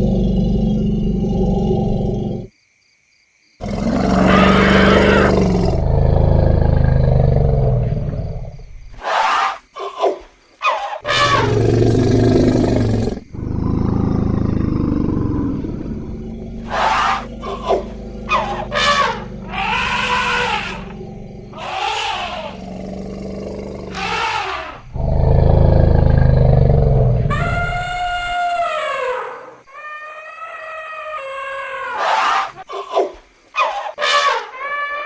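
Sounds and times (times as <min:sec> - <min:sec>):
elephant rumbling roars: 0:00.0 - 0:02.5, 0:03.6 - 0:08.8, 0:11.1 - 0:28.4
elephant trumpet blasts: 0:11.0 - 0:11.5.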